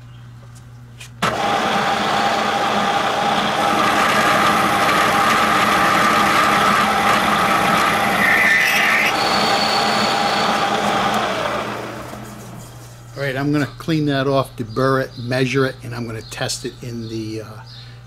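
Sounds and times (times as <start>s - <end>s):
metal lathe cutting steel: 1.3s - 12.6s
high-pitched tool squeal: 6.4s - 10.7s.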